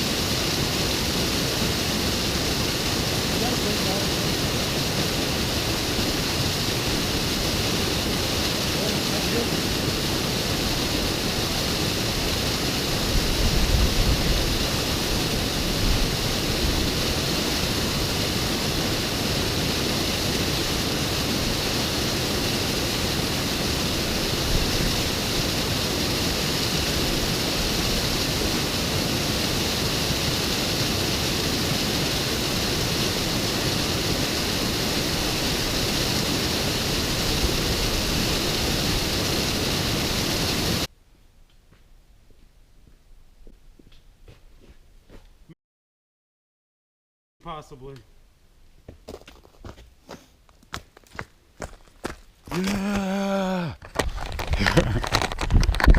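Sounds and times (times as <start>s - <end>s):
waterfall rushing: 0.0s - 40.9s, 52.5s - 53.8s.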